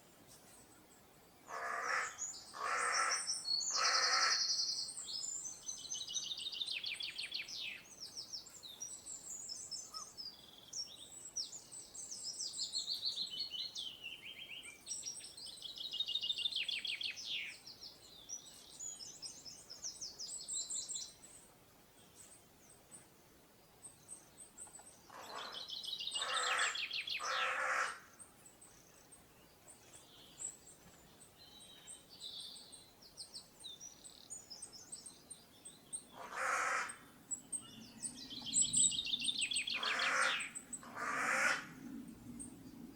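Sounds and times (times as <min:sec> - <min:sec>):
birds chirping and trilling: 0:00.5 - 0:42.9
harsh bird calls: 0:01.5 - 0:04.7, 0:25.1 - 0:28.2, 0:36.0 - 0:37.1, 0:37.8 - 0:41.8.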